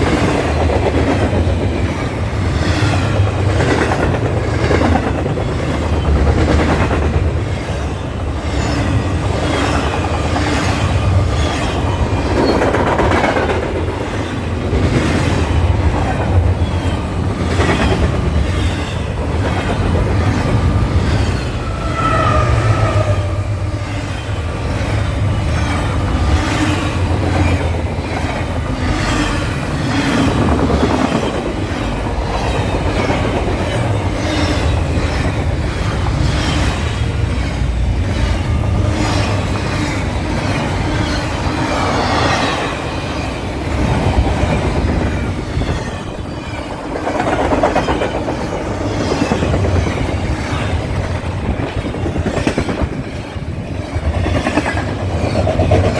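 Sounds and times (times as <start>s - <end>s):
clatter of train wheels: 0.0s - 55.9s
train rumbling on rails: 0.0s - 55.9s
high squeal: 21.2s - 24.2s.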